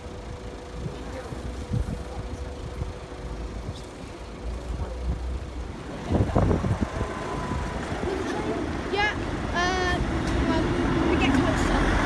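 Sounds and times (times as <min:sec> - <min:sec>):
street traffic rumbling: 0:00.0 - 0:12.0
wind buffeting microphone: 0:06.0 - 0:08.9.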